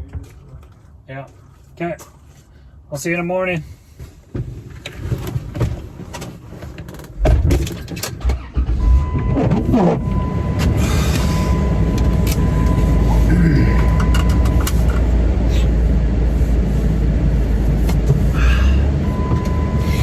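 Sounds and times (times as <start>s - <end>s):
car engine running: 8.4s - 20.0s.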